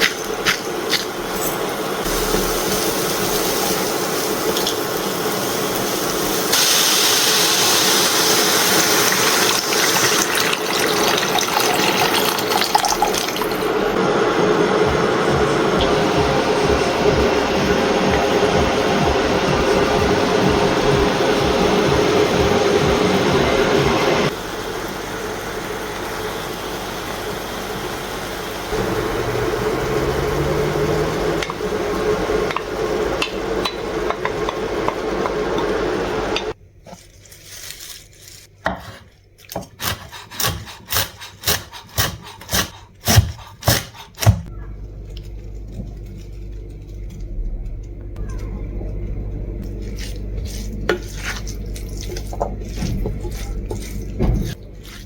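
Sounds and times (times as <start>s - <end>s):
steady hiss of cooking pot: 0.0s - 13.5s, 24.3s - 36.6s.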